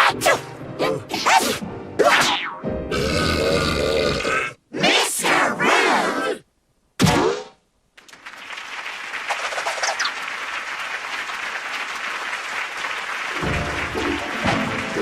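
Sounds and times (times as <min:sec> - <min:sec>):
music: 0:00.0 - 0:03.4, 0:12.9 - 0:15.0
audience applause: 0:08.0 - 0:15.0.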